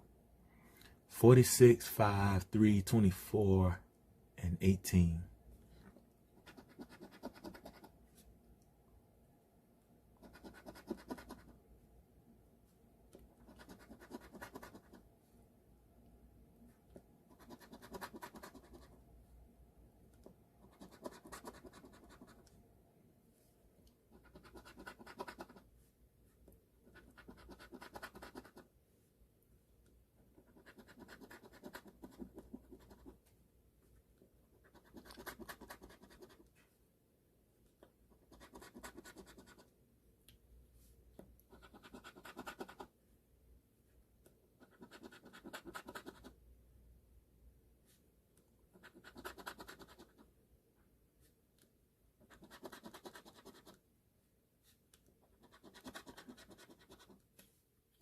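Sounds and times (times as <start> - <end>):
lottery ticket being scratched: 10.3 - 11.4, 13.5 - 15.0, 24.3 - 25.6, 27.0 - 28.6, 34.7 - 36.4, 41.6 - 42.9, 44.6 - 46.3, 52.3 - 53.7, 55.4 - 57.2.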